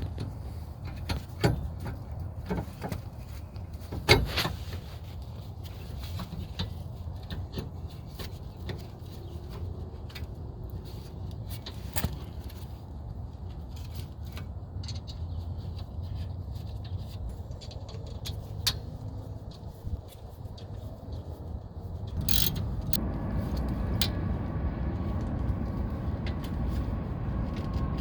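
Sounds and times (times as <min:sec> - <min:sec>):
low rumble: 0:22.1 - 0:28.0
metal tools clicking and knocking: 0:22.2 - 0:23.0.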